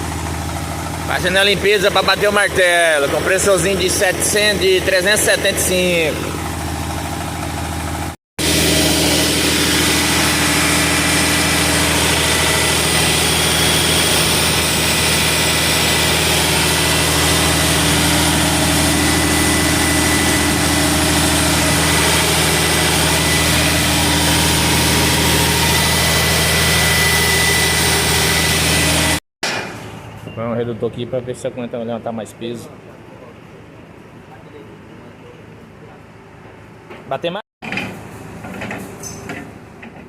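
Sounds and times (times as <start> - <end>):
air compressor engine running: 0.0 - 29.2.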